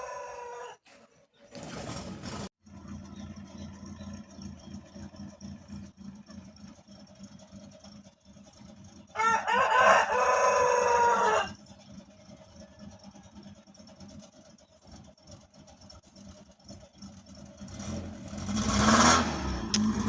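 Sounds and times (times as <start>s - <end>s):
rooster crowing: 0.0s - 0.9s, 9.1s - 11.6s.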